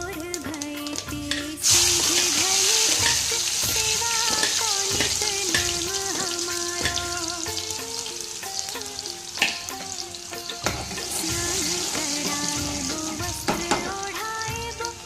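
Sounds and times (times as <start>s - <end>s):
devotional song: 0.0s - 15.0s
food sizzling in hot oil: 0.0s - 15.0s
spoon clinking against pan: 4.2s - 7.1s, 9.4s - 14.1s.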